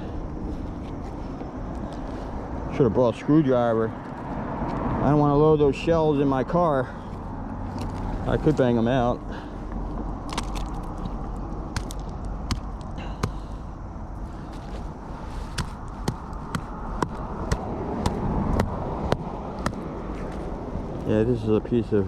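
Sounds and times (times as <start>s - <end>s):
sharp metal knocks: 11.7s - 13.5s, 15.6s - 19.8s.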